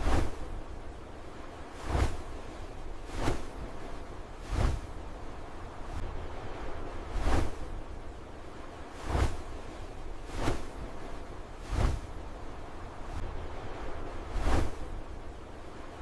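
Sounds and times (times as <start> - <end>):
whooshing swishes: 0.0 - 0.6, 1.7 - 5.1, 5.8 - 7.8, 8.9 - 12.2, 13.0 - 15.0
wind rumble on microphone: 0.0 - 16.0.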